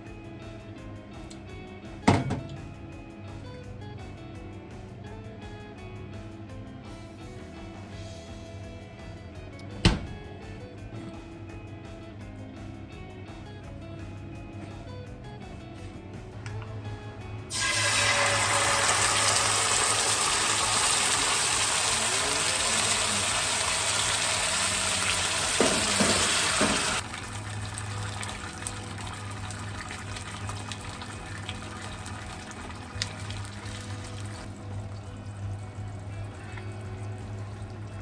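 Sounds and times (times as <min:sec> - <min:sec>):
kitchen tap running: 0:17.5 - 0:38.0.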